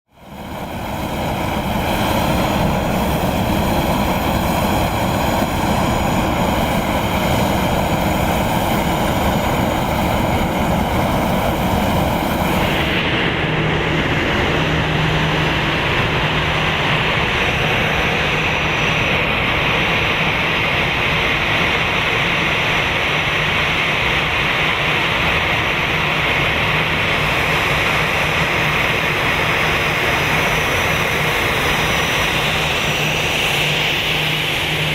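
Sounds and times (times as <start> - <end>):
jet turbine running: 0.1 - 34.9
low hum: 0.2 - 21.3.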